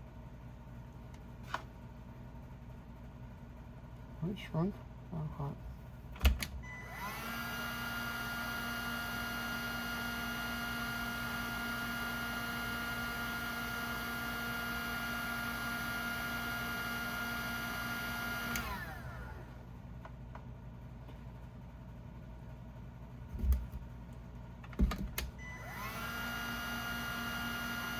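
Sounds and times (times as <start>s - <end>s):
heat gun fan whine: 5.9s - 20.0s, 23.4s - 27.9s.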